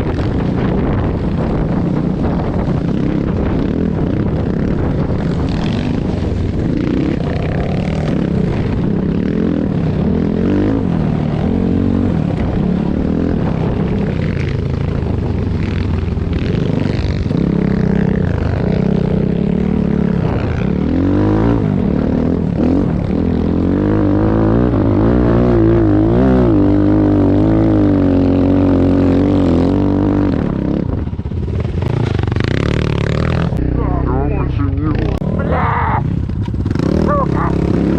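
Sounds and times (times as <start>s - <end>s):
motorcycle engine revving: 0.0s - 37.9s.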